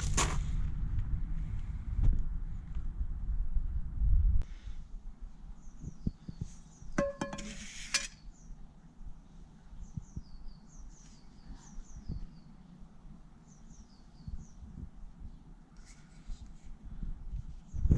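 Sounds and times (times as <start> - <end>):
faint low thumps: 0.0 - 4.4
small songbirds chirping: 5.4 - 7.2, 8.1 - 15.9.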